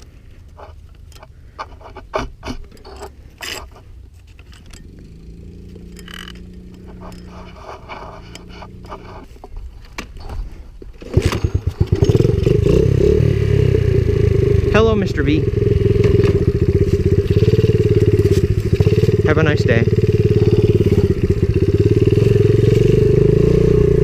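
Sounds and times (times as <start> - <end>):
clicks and scrapes: 0.0 - 4.9, 5.7 - 12.1
motorbike engine idling and revving: 2.8 - 9.3, 11.0 - 24.0.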